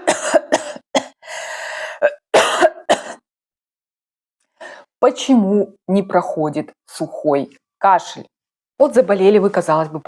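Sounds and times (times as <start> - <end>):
person coughing: 0.0 - 1.2, 2.0 - 3.3.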